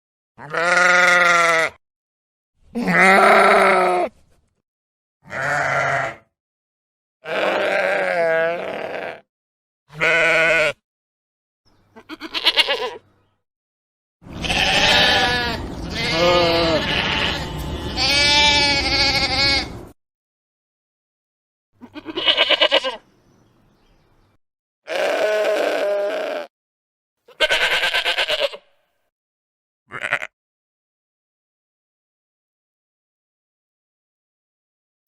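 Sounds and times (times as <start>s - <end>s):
sheep bleating: 0.4s - 1.8s, 2.7s - 4.1s, 5.2s - 6.3s, 7.2s - 9.3s, 9.9s - 10.8s, 12.0s - 13.0s, 14.3s - 19.8s, 21.8s - 23.0s, 24.9s - 26.5s, 27.3s - 28.7s, 29.9s - 30.4s.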